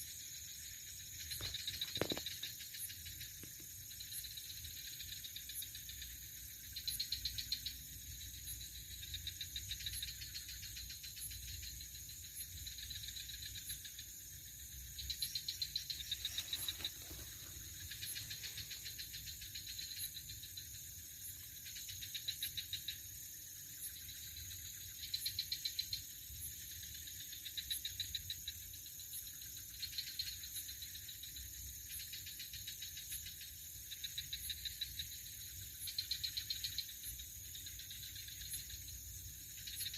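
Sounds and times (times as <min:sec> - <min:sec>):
night insects chirring: 0:00.0 - 0:39.9
rapid pulsing insect trills: 0:00.0 - 0:39.9.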